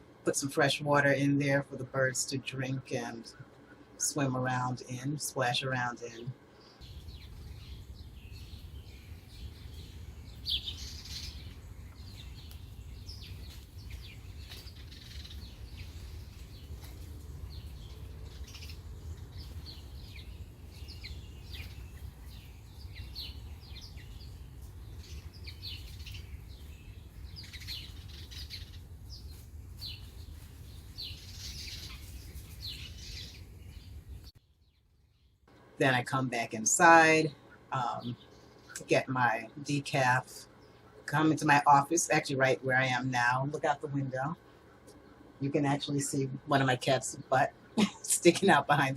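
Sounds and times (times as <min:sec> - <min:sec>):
birds chirping: 0:00.0 - 0:48.9
steady low rumble: 0:01.1 - 0:34.4.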